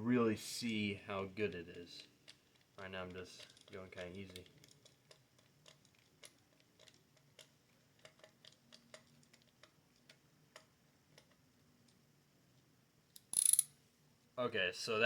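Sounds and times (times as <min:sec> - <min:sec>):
ratcheting screwdriver clicking: 0:13.2 - 0:13.7.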